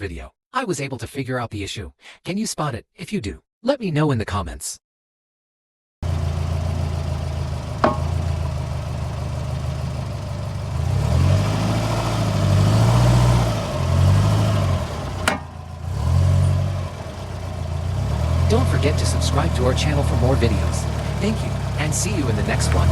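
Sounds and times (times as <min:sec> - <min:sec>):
car engine running: 0:06.0 - 0:22.9
sharp clunks from car: 0:07.8 - 0:08.3, 0:15.2 - 0:15.5.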